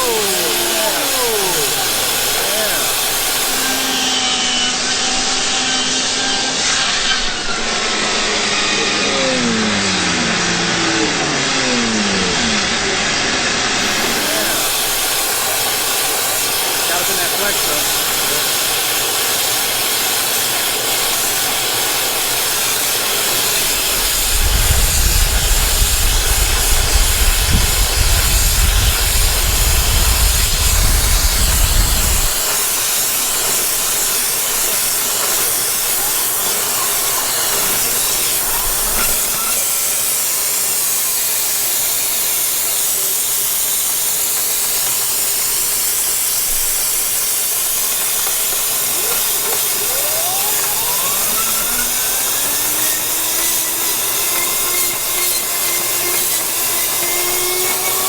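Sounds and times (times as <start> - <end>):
air rushing through vent: 0.0 - 4.2, 13.8 - 39.9, 46.7 - 58.0.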